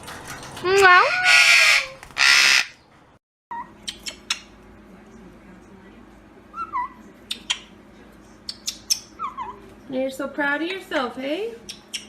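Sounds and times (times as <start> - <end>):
parrot chirping: 0.8 - 2.8, 3.5 - 4.5, 6.5 - 7.7, 8.5 - 9.6, 11.7 - 12.0.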